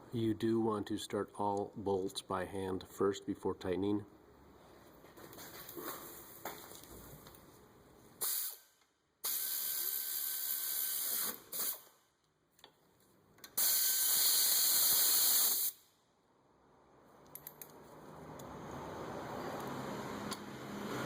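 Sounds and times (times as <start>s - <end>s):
exhaust air hiss: 8.2s - 11.9s, 13.6s - 15.8s
air ratchet running: 13.6s - 15.8s.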